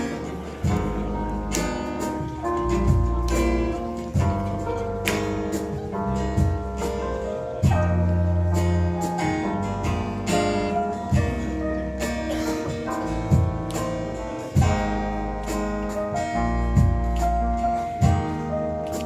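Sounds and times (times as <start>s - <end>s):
drum hits: 0.0s - 7.0s, 7.6s - 9.2s, 11.1s - 15.1s, 18.0s - 18.5s
bass: 0.0s - 19.0s
guitar playing a tune: 0.0s - 19.0s.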